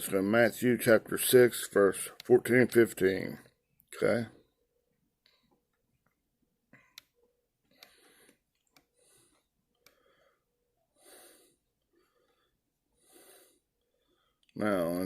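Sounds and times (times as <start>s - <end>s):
soft breaths close to microphone: 7.6s - 14.6s.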